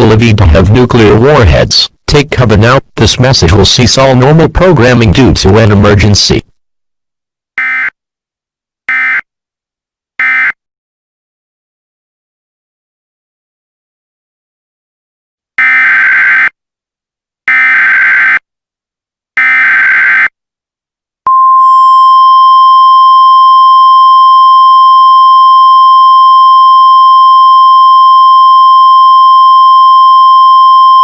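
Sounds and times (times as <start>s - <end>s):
steady single-pitch alert tone: 21.3s - 31.0s.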